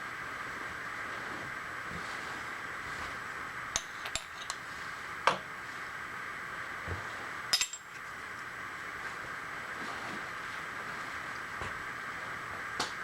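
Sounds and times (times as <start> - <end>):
steady shop hum: 0.0 - 13.0
metal tools clinking: 3.8 - 4.6, 7.6 - 8.0.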